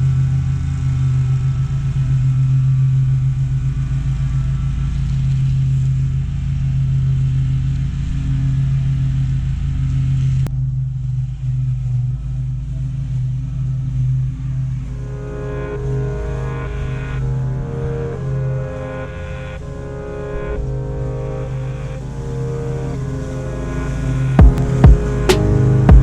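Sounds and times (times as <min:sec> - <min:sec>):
engine humming: 0:00.0 - 0:26.0
music: 0:14.9 - 0:26.0.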